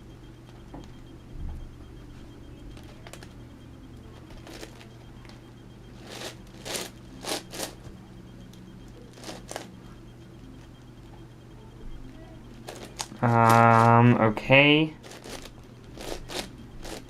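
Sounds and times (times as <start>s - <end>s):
faint low hum: 0.0s - 17.0s
speed cube clicking and rasping: 6.0s - 7.7s, 15.0s - 17.0s.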